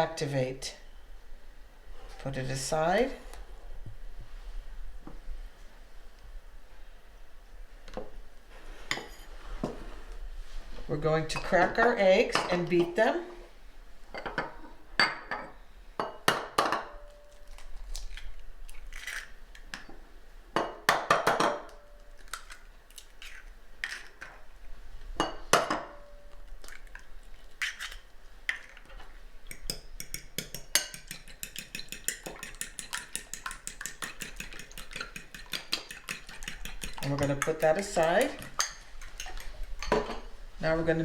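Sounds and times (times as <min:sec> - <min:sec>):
eggs cracking on bowl: 0:29.5 - 0:40.0
utensil clinking against bowl: 0:29.5 - 0:40.3.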